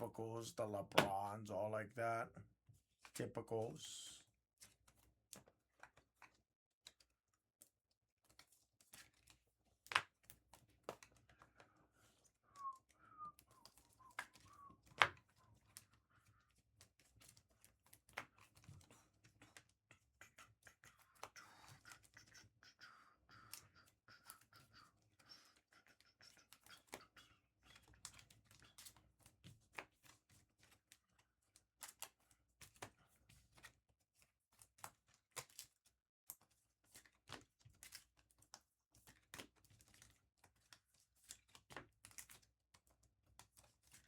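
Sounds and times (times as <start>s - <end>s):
soft rustling of cards: 0.0s - 44.0s
card edges clicking and tapping: 25.9s - 30.8s.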